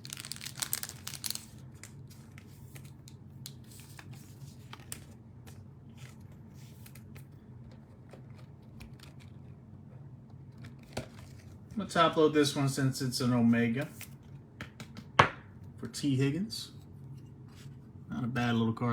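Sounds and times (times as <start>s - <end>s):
cards clicking and rustling: 0.0s - 9.6s
steady low hum: 0.0s - 18.9s.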